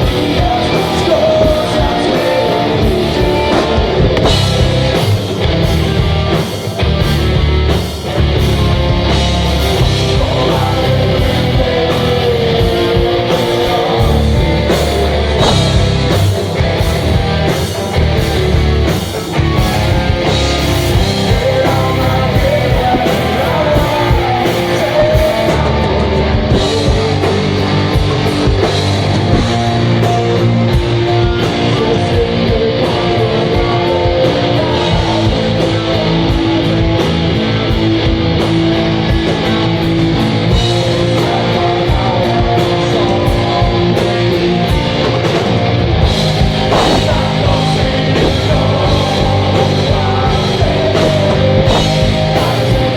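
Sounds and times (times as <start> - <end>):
bass guitar: 0.0 - 52.9
drums and cymbals: 0.0 - 52.9
electric guitar: 0.0 - 52.9.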